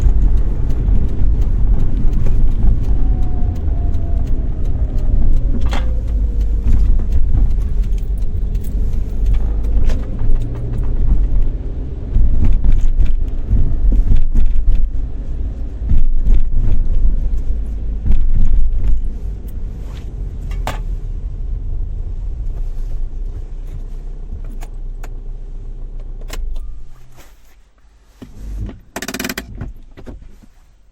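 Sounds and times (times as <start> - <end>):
car engine idling: 0.0 - 27.0
car engine and road rumble: 0.0 - 30.9
clicks and rattles: 28.7 - 30.2.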